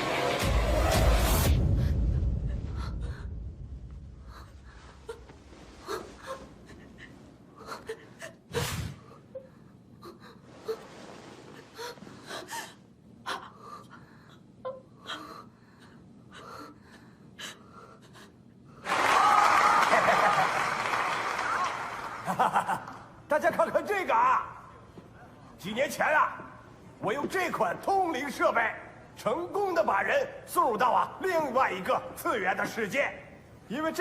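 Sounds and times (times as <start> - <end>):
music: 0.0 - 2.6.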